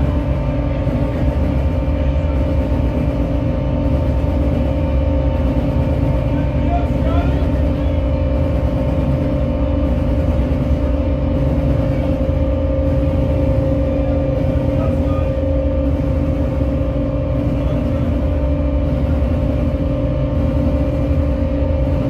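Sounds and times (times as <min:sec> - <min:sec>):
distorted noise music drone: 0:00.0 - 0:22.0.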